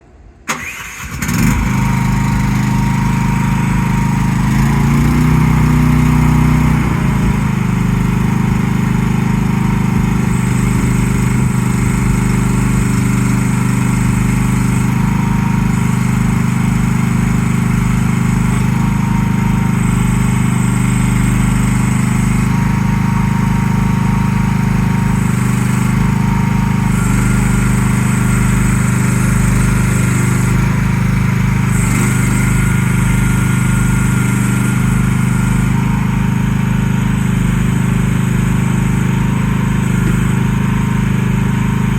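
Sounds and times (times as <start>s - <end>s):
mini excavator engine running: 0.2s - 41.9s.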